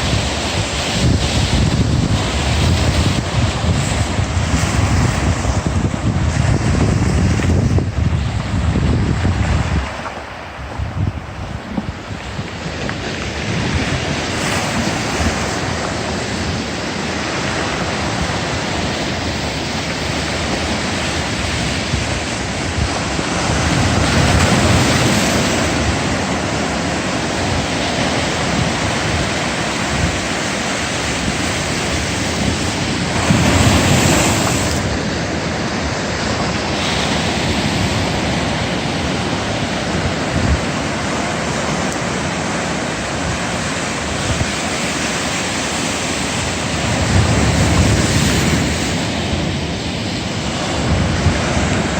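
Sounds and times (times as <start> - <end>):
ocean waves breaking: 0.0 - 51.9.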